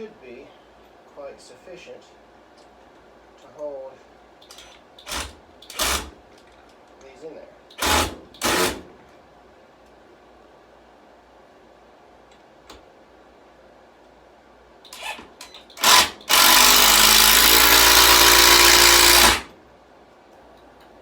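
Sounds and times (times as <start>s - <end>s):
power drill driving screw: 4.4s - 6.2s, 7.8s - 8.9s, 14.9s - 19.5s.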